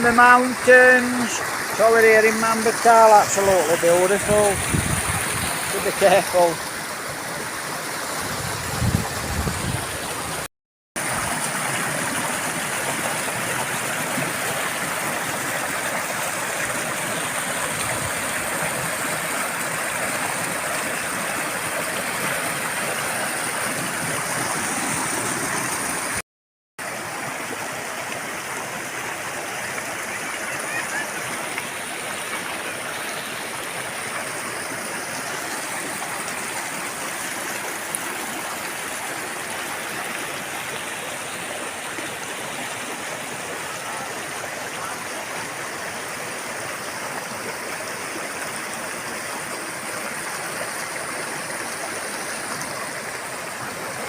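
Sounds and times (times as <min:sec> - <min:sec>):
river rushing over rocks: 0:00.0 - 0:26.2, 0:26.8 - 0:54.0.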